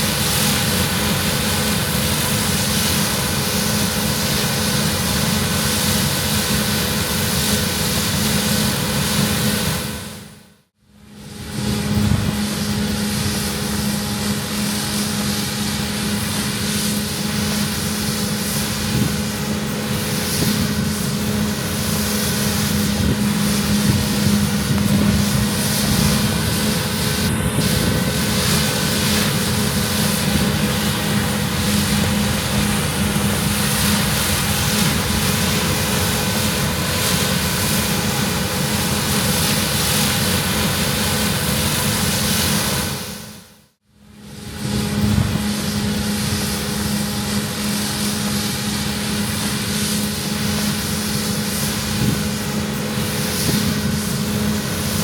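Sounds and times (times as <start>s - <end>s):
combine harvester engine drone: 0.0s - 55.0s
rushing noise: 11.0s - 43.5s.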